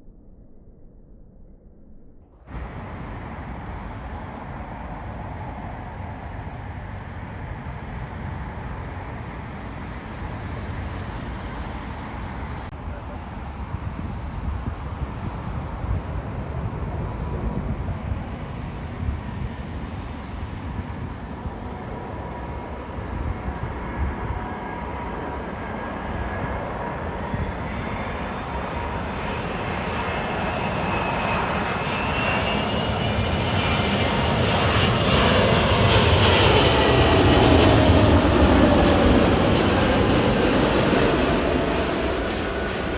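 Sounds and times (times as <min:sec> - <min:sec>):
jet engines droning and whining: 0:00.0 - 0:42.9.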